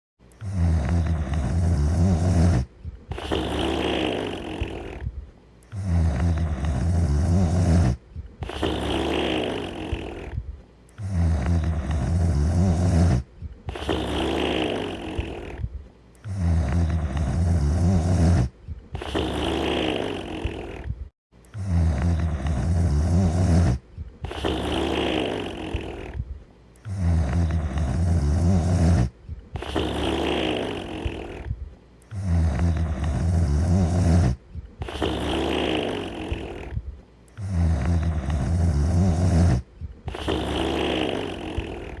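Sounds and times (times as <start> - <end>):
person snoring: 0.3 - 42.0.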